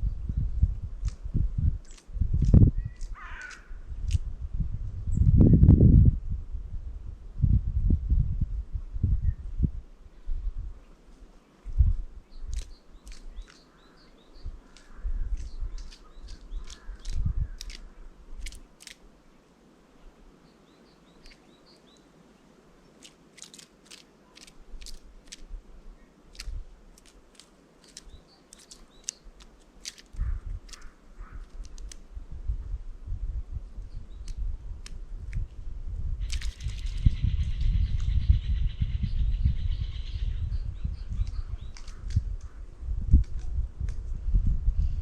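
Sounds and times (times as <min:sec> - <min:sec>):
small birds chirping: 0:01.8 - 0:04.2, 0:10.1 - 0:19.1, 0:20.0 - 0:32.0, 0:33.7 - 0:34.5, 0:36.2 - 0:42.7.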